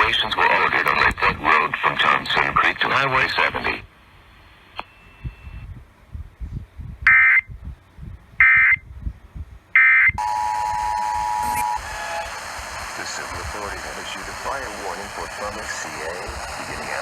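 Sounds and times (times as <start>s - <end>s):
two-tone attention signal: 10.2s - 12.3s
buzzing data bursts: 10.2s - 17.0s.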